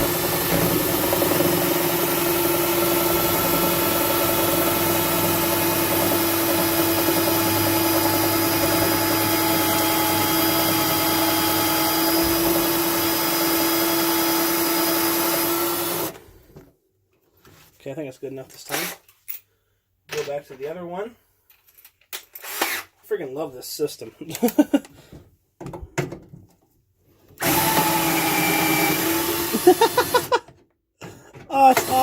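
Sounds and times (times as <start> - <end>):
power drill motor whine: 0.0 - 16.2, 27.4 - 30.3, 31.7 - 32.0.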